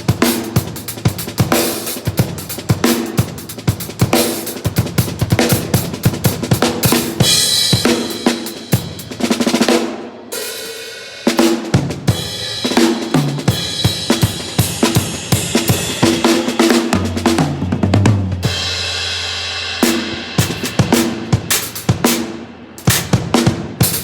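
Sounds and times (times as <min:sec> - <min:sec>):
drum kit playing a beat: 0:00.0 - 0:24.0.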